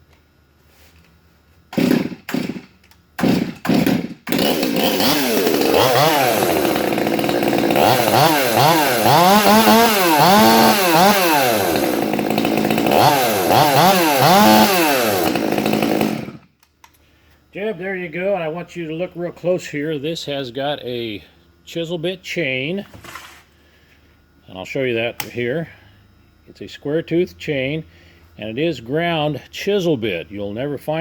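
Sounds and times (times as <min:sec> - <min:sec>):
chainsaw starting and revving: 0:01.7 - 0:16.5.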